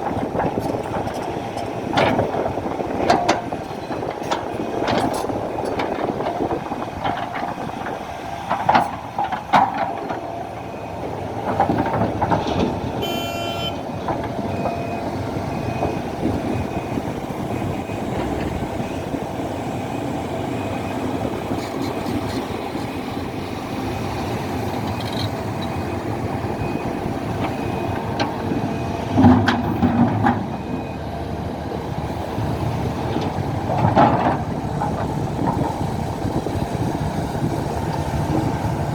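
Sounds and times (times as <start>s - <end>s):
excavator diesel engine running: 0.0s - 38.9s
reversing alarm beeping: 12.3s - 13.8s, 14.4s - 22.4s, 23.8s - 31.5s.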